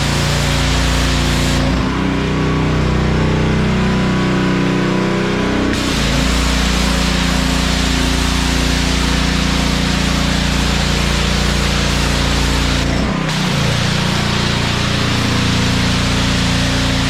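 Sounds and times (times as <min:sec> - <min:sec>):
high-pressure spray hissing: 0:00.0 - 0:01.8, 0:05.8 - 0:17.0
pressure washer engine running: 0:00.0 - 0:17.0.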